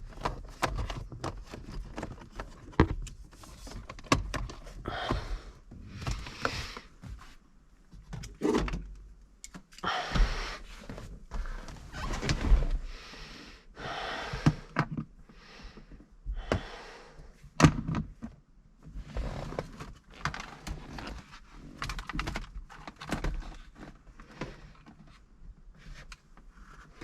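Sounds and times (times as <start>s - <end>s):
clicks and knocks of plastic parts: 0.0s - 5.3s, 7.9s - 9.8s, 17.6s - 18.5s, 19.6s - 25.2s.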